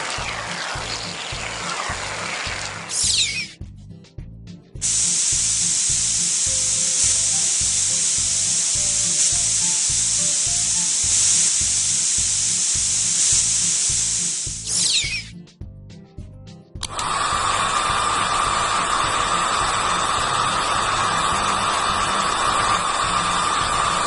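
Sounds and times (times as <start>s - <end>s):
loud hiss: 0.0s - 3.5s, 4.8s - 15.3s, 16.9s - 24.0s
background music with beat: 0.0s - 6.9s, 15.4s - 20.2s.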